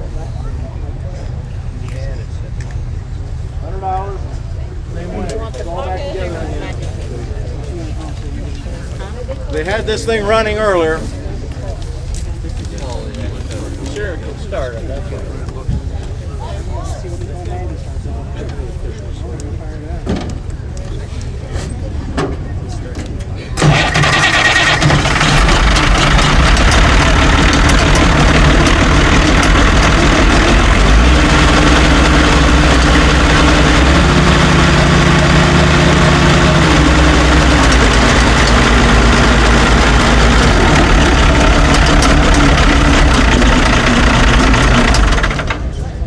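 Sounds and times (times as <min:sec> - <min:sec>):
tractor engine starting and running: 0:23.2 - 0:46.0.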